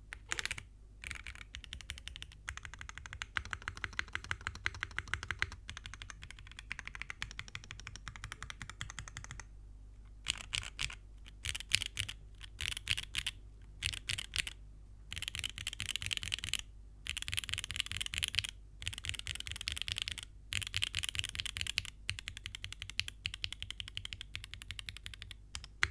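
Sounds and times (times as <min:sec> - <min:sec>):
mechanical keyboard typing: 0:00.1 - 0:09.5, 0:10.2 - 0:25.9.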